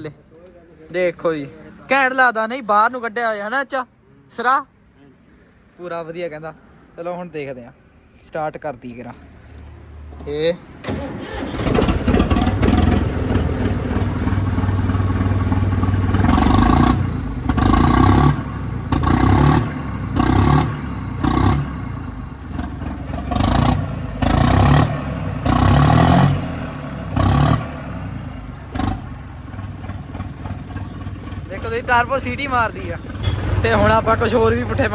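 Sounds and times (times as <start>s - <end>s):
tractor diesel engine revving: 10.8s - 34.9s
turbo whistling: 29.2s - 34.9s.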